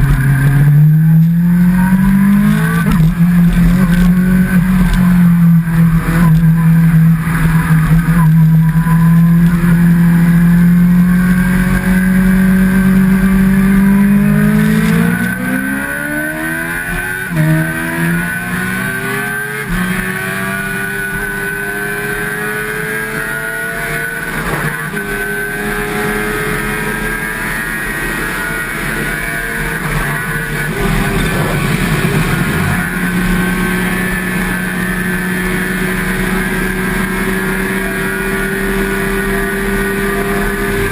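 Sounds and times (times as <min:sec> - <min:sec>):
motorcycle engine running: 0:28.8 - 0:40.9.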